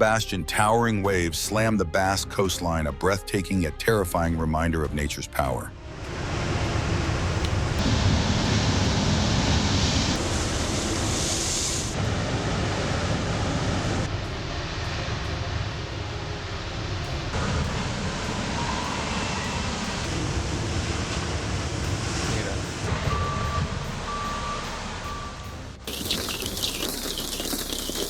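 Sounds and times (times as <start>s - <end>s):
wind: 5.9s - 28.0s.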